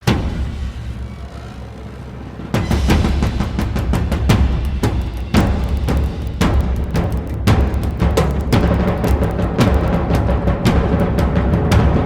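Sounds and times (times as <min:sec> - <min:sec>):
thunder crack and rumble: 0:02.6 - 0:12.0.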